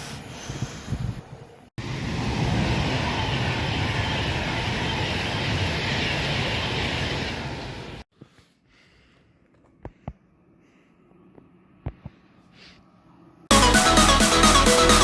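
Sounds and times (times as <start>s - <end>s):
train rushing past: 1.8s - 8.0s.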